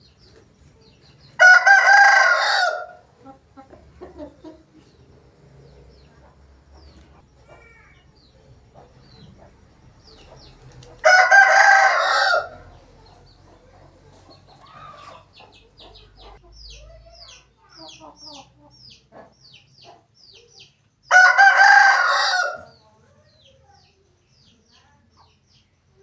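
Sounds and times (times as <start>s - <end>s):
small birds chirping: 0.0s - 11.2s, 11.8s - 21.2s, 22.1s - 26.0s
rooster crowing: 1.4s - 3.0s, 11.0s - 12.8s, 21.1s - 22.7s.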